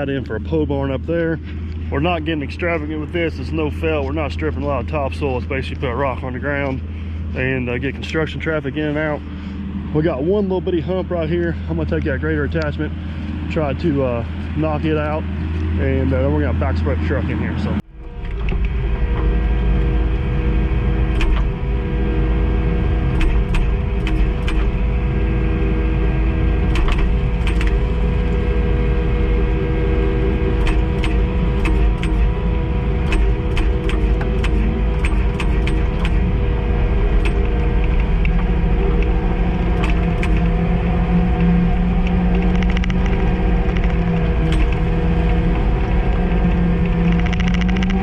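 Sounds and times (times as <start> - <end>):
skid steer diesel engine rumbling: 0.0 - 48.0
sharp clicks and clanks: 18.0 - 48.0.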